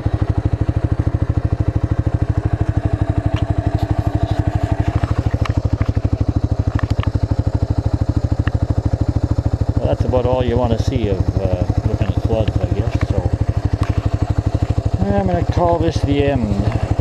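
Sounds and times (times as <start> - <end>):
trike engine running: 0.0 - 17.0.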